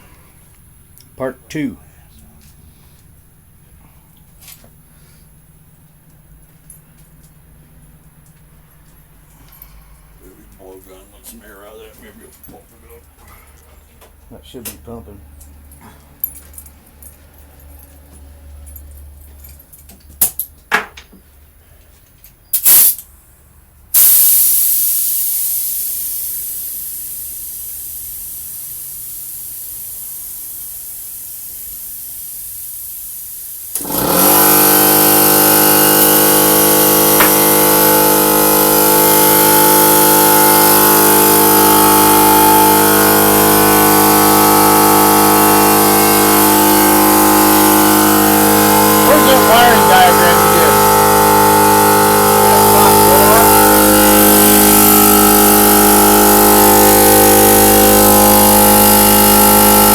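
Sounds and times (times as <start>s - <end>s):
electric air compressor running: 0.0s - 14.2s, 22.5s - 23.1s, 23.9s - 59.9s
air hissing out: 22.5s - 23.0s, 24.0s - 59.9s
blow gun air blasts: 32.3s - 59.9s.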